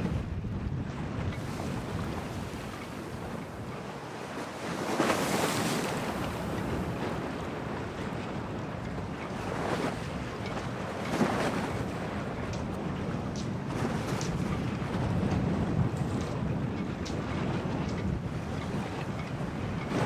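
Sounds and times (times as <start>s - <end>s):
waves rushing: 0.0s - 0.2s, 1.3s - 14.2s
stormy wind: 0.0s - 20.0s.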